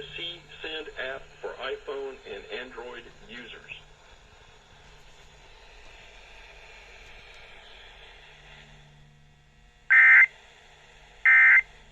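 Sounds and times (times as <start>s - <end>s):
faint radio hiss: 0.0s - 11.9s
buzzing digital data tones: 9.9s - 10.3s.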